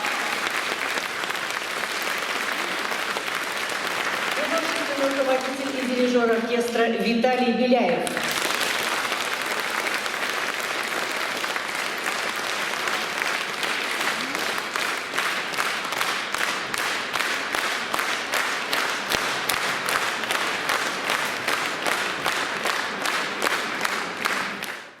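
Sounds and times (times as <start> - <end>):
audience applauding: 0.0 - 6.8, 8.0 - 25.0.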